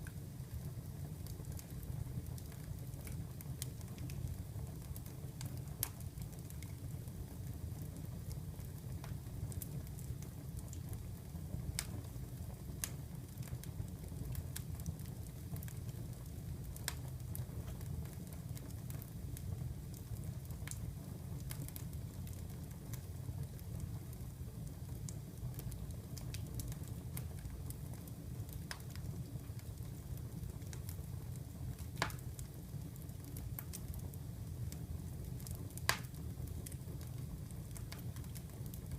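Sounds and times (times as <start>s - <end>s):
fire crackles and pops: 0.0s - 38.9s
fire low rumble: 0.0s - 38.9s.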